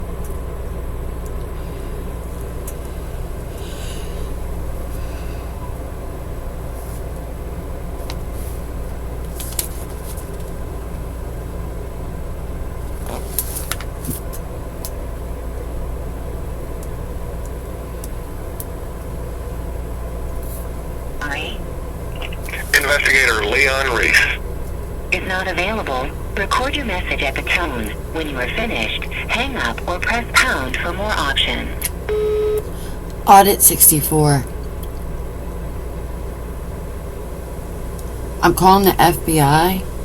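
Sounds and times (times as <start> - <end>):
steady low rumble: 19.2 - 40.0.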